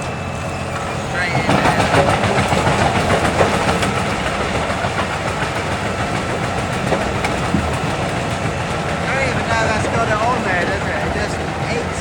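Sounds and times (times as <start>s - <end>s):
wood chipper chipping wood: 0.0s - 12.0s.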